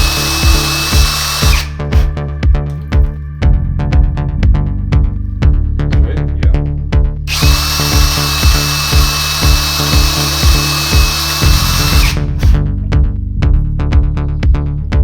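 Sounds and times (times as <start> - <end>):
electric drill whine: 0.0 - 2.1, 7.3 - 12.6
electronic music with beat: 0.0 - 15.0.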